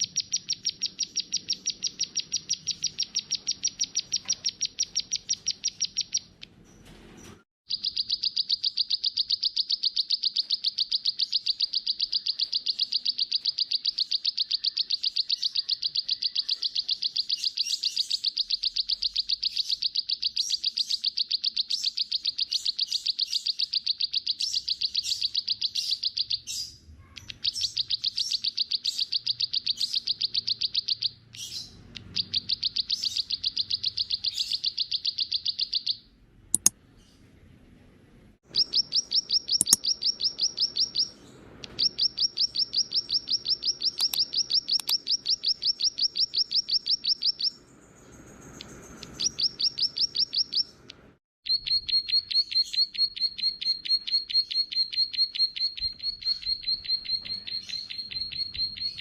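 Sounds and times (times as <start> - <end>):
songbird trilling: 0.0 - 6.5, 7.7 - 36.7, 38.5 - 47.6, 48.2 - 50.9, 51.5 - 59.0
sharp bird notes: 38.5 - 47.6, 48.3 - 50.9.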